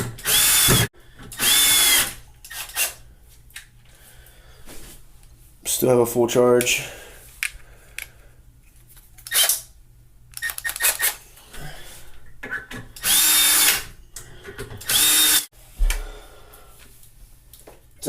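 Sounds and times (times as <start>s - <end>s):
cordless screwdriver driving screws: 13.0s - 13.8s, 14.8s - 15.4s.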